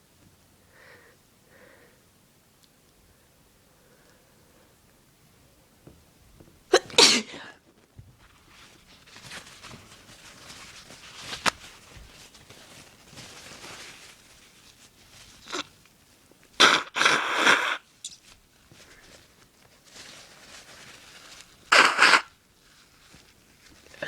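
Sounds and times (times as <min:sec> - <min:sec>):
person sneezing: 0:06.7 - 0:07.6, 0:21.7 - 0:22.3.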